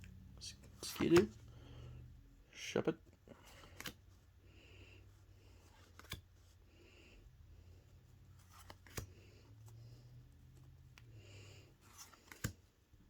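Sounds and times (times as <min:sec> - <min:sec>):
trading cards rustling and sliding: 0:00.1 - 0:01.6, 0:03.3 - 0:04.4, 0:05.0 - 0:12.8.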